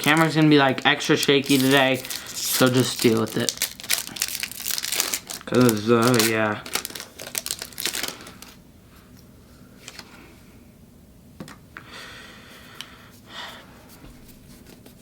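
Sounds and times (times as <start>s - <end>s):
foil wrapper crinkling: 0.0s - 8.6s.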